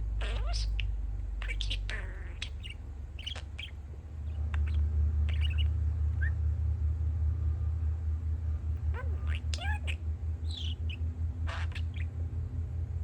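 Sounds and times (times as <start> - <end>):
construction machinery rumble: 0.0 - 13.0
budgie chirping and warbling: 0.2 - 6.4, 8.9 - 12.2.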